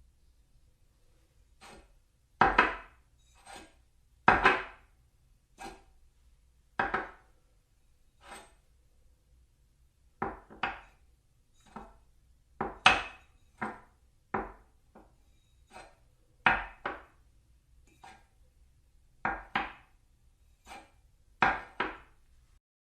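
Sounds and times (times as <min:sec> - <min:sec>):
plates clacking on a table: 0:10.2 - 0:11.0, 0:12.6 - 0:17.2, 0:20.7 - 0:22.2.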